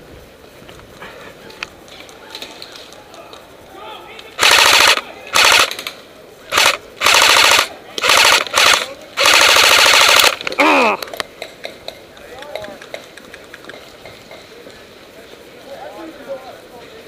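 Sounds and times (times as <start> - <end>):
airsoft gun firing full-auto: 4.4 - 5.9, 6.5 - 10.5.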